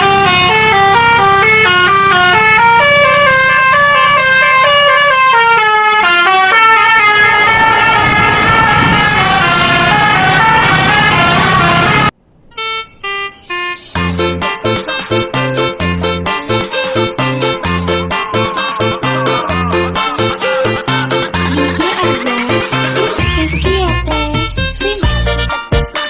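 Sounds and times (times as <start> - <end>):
bus engine running: 0.0 - 25.8
bus musical horn melody: 0.0 - 26.0
music track with bass line: 14.0 - 26.0.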